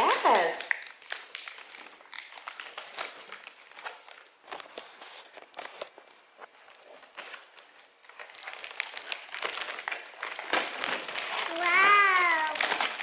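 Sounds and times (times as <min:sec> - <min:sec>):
packaging crinkling and rustling: 0:00.0 - 0:13.0.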